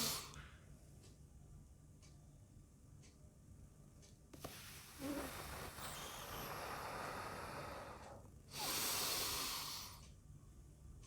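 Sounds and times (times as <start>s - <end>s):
person inhaling through nose: 4.5s - 10.0s
air blown through pursed lips: 4.9s - 9.9s.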